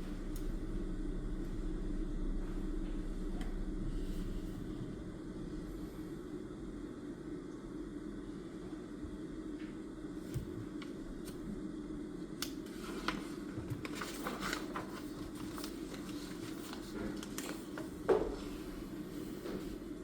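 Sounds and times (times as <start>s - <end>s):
low room hum: 0.0s - 20.0s
paper and pen handling: 12.8s - 17.9s.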